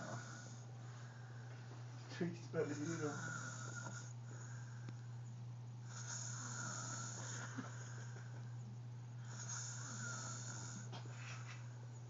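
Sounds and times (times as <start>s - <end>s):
man snoring: 0.0s - 0.7s, 2.6s - 4.7s, 5.8s - 8.2s, 9.2s - 10.9s
steady low hum: 0.0s - 12.0s.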